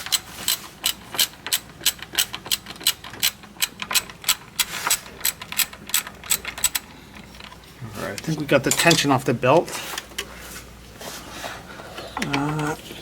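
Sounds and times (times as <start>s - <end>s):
ratchet wrench clicking: 0.0s - 6.8s.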